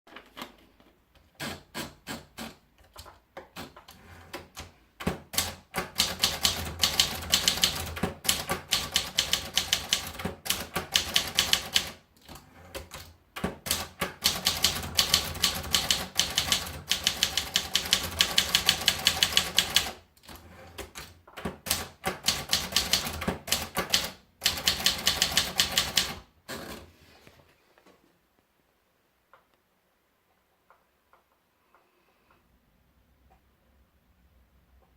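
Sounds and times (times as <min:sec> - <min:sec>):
manual typewriter keystrokes: 0:01.4 - 0:26.8.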